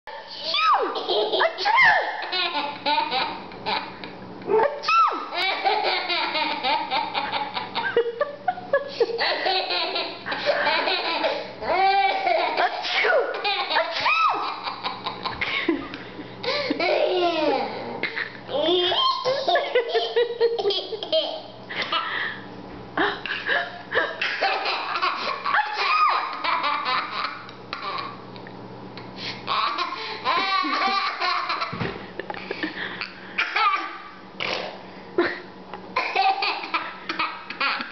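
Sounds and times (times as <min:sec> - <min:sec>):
person laughing: 0:07.2 - 0:13.2, 0:13.8 - 0:18.4, 0:19.2 - 0:21.1, 0:23.0 - 0:26.4, 0:30.2 - 0:33.2, 0:35.2 - 0:35.5
person giggling: 0:07.6 - 0:13.2, 0:15.0 - 0:18.4, 0:19.3 - 0:26.2, 0:35.2 - 0:35.5.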